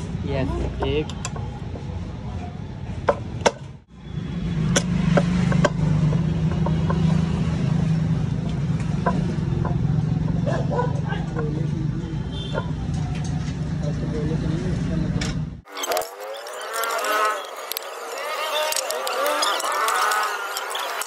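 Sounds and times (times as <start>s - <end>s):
hand tools clicking on metal: 15.7s - 21.0s.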